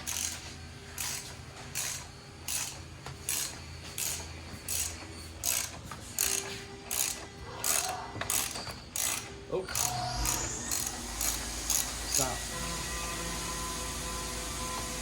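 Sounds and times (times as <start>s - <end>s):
ratchet strap clicking: 0.1s - 0.4s, 1.0s - 1.2s, 1.8s - 9.2s.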